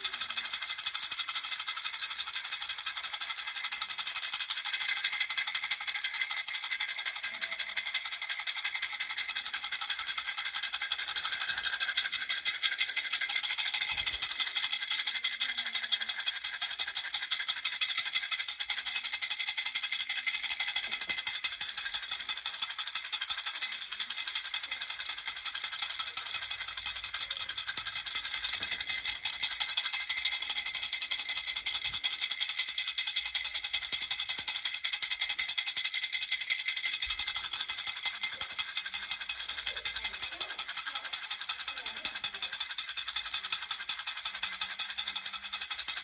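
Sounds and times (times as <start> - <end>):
rattle shaken fast: 0.0 - 46.0.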